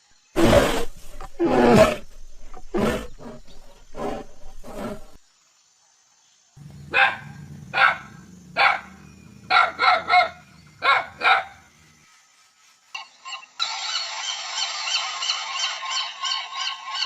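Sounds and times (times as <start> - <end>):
dog barking: 6.9 - 11.6.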